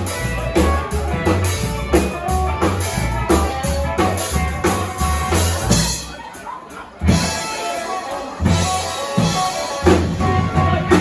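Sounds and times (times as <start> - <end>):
deep bass line: 0.0 - 6.1
electric guitar: 0.0 - 6.3, 7.0 - 11.0
drum kit beat: 0.0 - 11.0.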